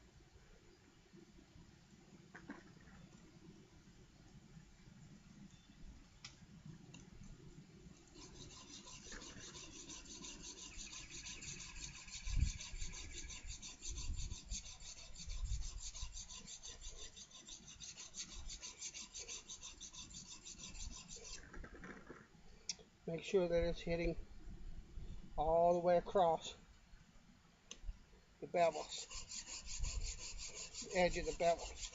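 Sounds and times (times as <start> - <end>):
steel blade scraping on sharpening plate: 8.2 - 21.4.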